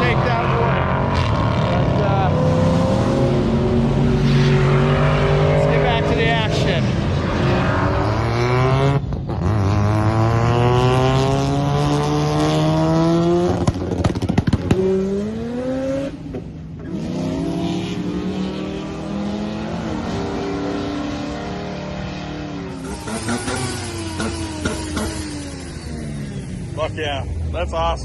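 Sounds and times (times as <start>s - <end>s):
car engine accelerating hard: 0.0s - 28.0s.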